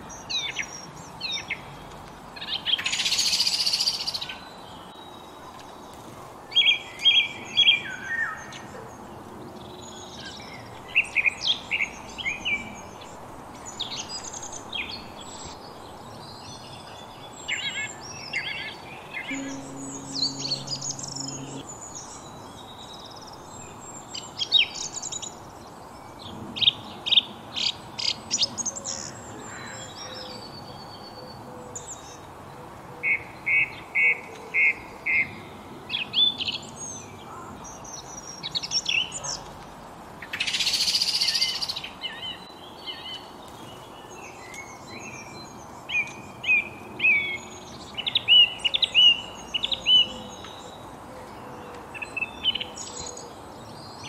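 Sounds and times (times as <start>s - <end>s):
birds singing and chirping: 0.0s - 25.6s, 40.2s - 54.0s.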